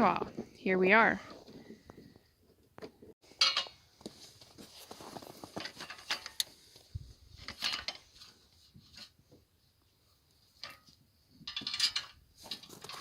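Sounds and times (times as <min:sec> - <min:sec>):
irregular clattering and knocking: 0:10.6 - 0:13.0.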